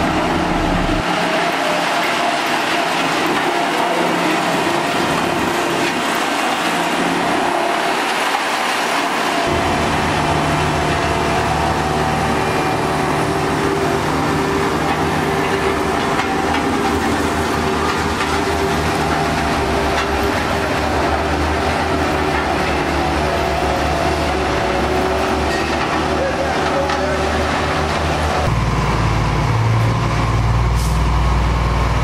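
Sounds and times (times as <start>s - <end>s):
mechanical rumble: 0.0s - 1.0s
diesel machinery engine drone: 0.0s - 32.0s.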